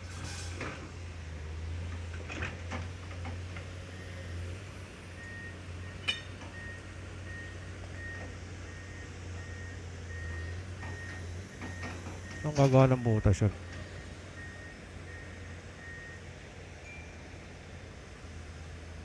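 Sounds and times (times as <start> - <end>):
reversing alarm beeping: 5.2 - 17.2.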